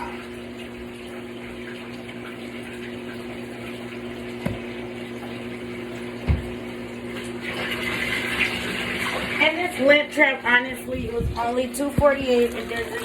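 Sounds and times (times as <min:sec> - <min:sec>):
washing machine motor hum: 0:00.0 - 0:13.0
water rushing out of drain: 0:06.3 - 0:09.6.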